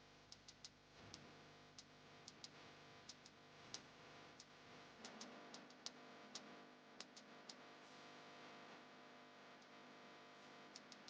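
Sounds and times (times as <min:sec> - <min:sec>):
faint sharp clicks: 0:00.3 - 0:07.7, 0:10.7 - 0:11.0.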